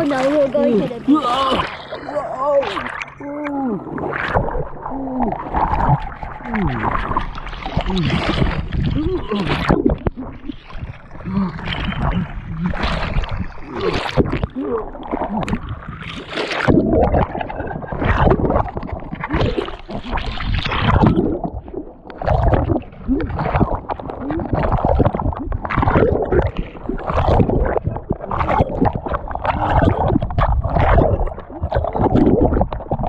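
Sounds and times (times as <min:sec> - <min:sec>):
deep rumble: 0:00.0 - 0:16.0
sea water sloshing and gurgling: 0:00.0 - 0:33.0.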